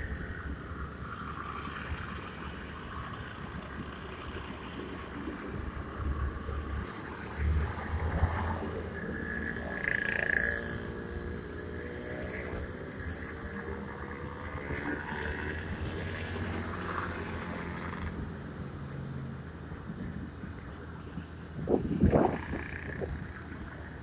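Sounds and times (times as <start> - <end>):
high-pitched traffic sound: 0.0 - 18.6, 22.0 - 24.0
scooter engine: 0.0 - 18.7, 22.0 - 24.0
wind on microphone: 21.5 - 24.0.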